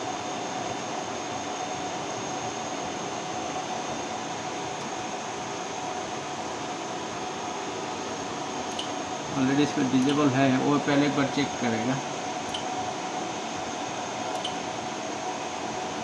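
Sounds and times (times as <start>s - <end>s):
ventilation machinery hum: 0.0s - 16.0s
short click: 14.4s - 14.6s.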